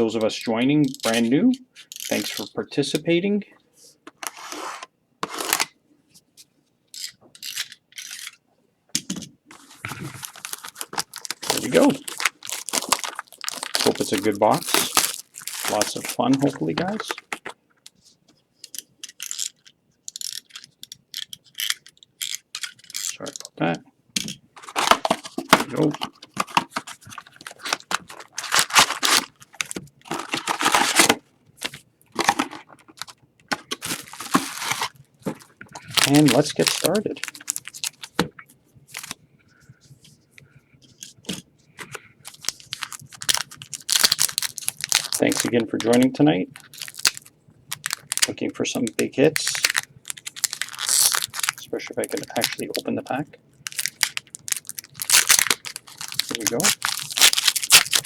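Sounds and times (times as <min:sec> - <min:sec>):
wrapper and cardboard scraping: 0:04.2 - 0:05.7, 0:09.5 - 0:17.6, 0:24.6 - 0:38.2, 0:41.8 - 0:48.3, 0:49.4 - 0:52.9, 0:53.6 - 0:58.0.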